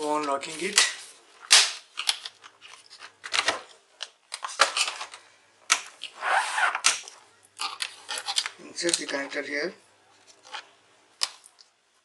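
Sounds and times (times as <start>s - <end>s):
plastic parts rustling: 0.0s - 6.2s
plastic parts clicking: 0.8s - 6.1s.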